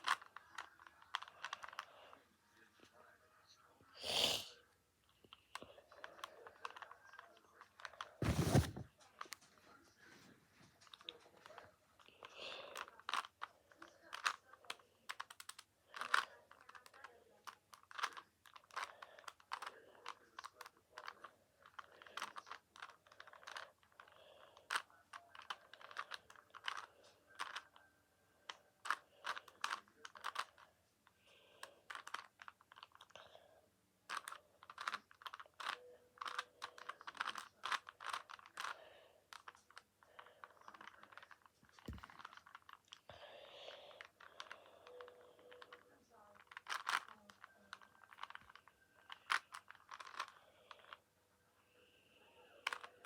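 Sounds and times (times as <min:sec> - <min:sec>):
plastic puzzle cube clicking: 0:00.0 - 0:01.9, 0:06.1 - 0:07.0, 0:12.7 - 0:27.8, 0:28.5 - 0:30.7, 0:31.6 - 0:33.1, 0:34.1 - 0:43.0, 0:43.9 - 0:51.0, 0:52.6 - 0:53.0.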